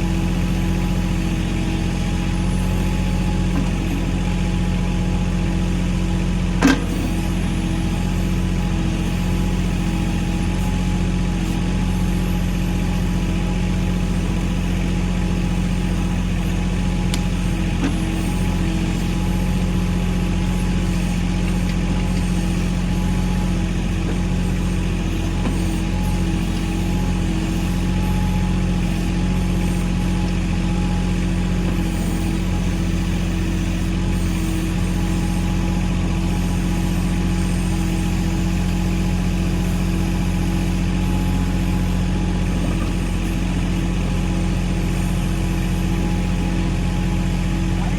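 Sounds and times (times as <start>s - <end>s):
tractor diesel engine running: 0.0s - 47.9s.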